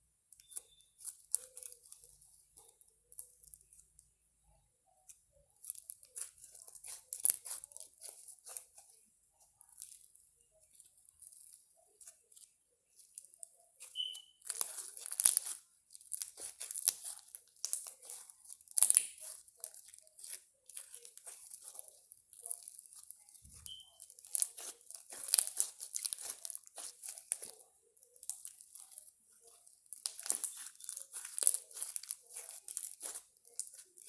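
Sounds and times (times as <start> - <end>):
slime squeezed by hand crackling: 5.7 - 8.8, 13.8 - 21.8, 29.9 - 34.0.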